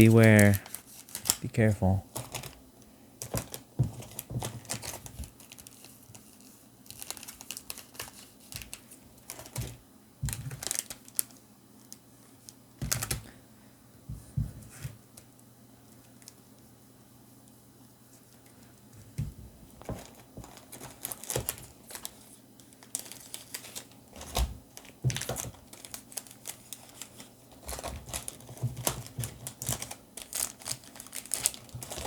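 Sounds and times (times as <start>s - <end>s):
foil packs crinkling: 0.0s - 1.4s, 2.1s - 2.6s, 3.2s - 12.0s, 12.8s - 13.3s, 19.8s - 32.0s.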